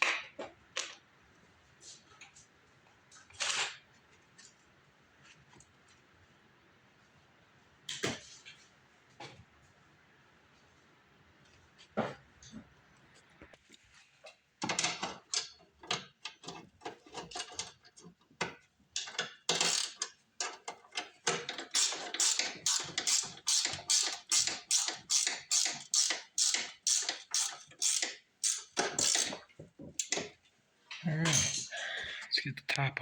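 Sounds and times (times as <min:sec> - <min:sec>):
ratchet wrench clicking: 0:21.7 - 0:29.3.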